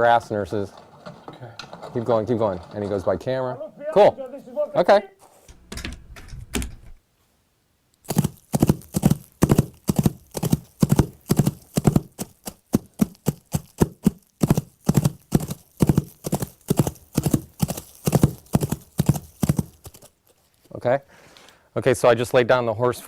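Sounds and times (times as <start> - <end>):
clip-clop hoofbeats: 8.1 - 20.2.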